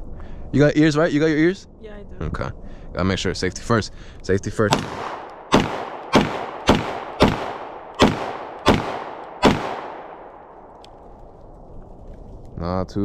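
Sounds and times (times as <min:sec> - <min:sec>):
pistol shots with echo: 0:04.7 - 0:10.7.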